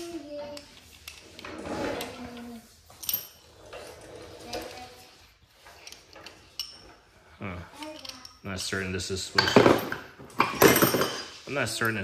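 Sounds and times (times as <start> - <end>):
metal tool parts clinking: 5.8 - 6.9, 7.8 - 12.0.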